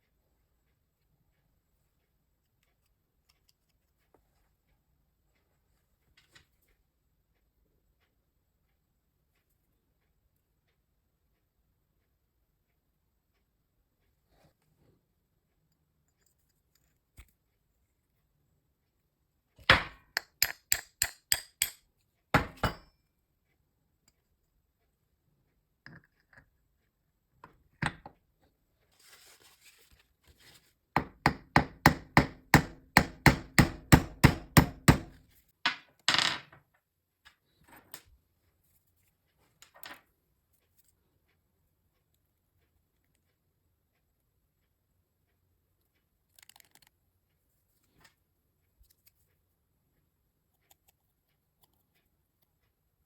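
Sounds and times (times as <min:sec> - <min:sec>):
hammer tapping: 0:19.9 - 0:21.8, 0:31.0 - 0:35.2.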